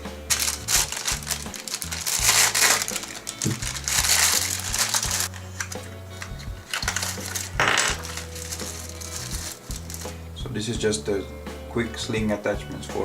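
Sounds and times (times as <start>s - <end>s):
music with low notes: 0.0s - 13.0s
package wrapping torn and crinkled: 0.3s - 10.2s.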